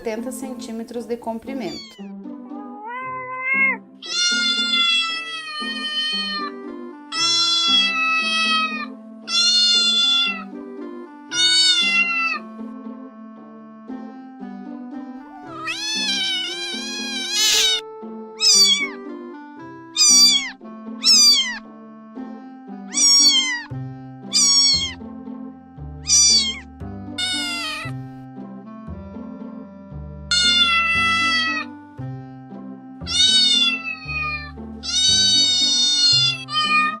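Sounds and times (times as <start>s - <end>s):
background music: 0.0s - 37.0s
cats meowing: 1.6s - 10.5s, 11.3s - 12.5s, 15.3s - 17.8s, 18.4s - 19.0s, 20.0s - 21.6s, 22.9s - 23.7s, 24.3s - 25.0s, 26.0s - 27.9s, 30.3s - 31.8s, 33.0s - 37.0s.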